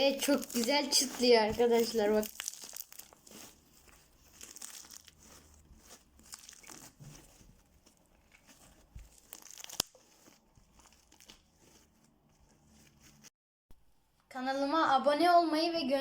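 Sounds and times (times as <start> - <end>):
slime crackling and popping: 0.0 - 11.9.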